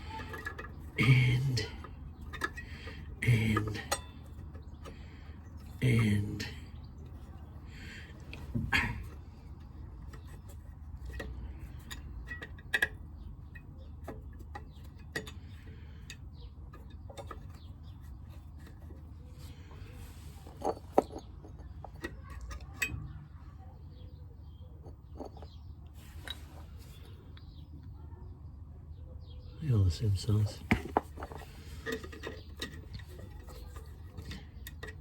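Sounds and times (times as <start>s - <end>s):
metal brake pads clicking: 0.0s - 1.0s, 1.6s - 5.8s, 8.2s - 19.0s, 30.6s - 35.0s
steady low hum: 0.0s - 23.8s.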